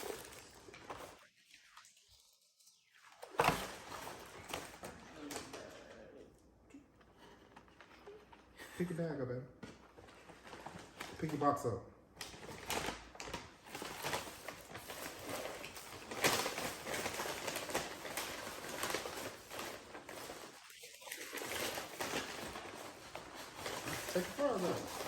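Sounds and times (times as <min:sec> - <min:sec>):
paper bags rustling: 0:00.0 - 0:01.2, 0:03.2 - 0:05.9, 0:09.8 - 0:25.0.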